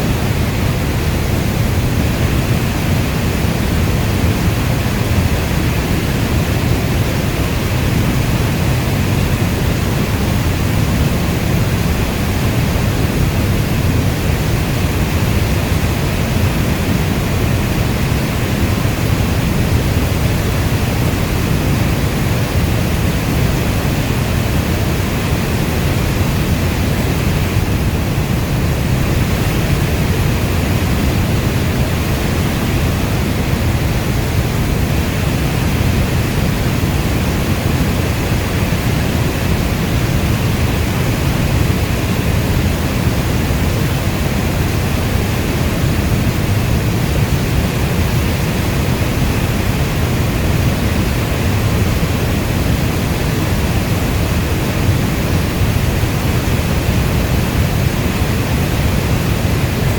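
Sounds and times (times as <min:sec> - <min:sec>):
heavy rainfall: 0:00.0 - 0:59.9.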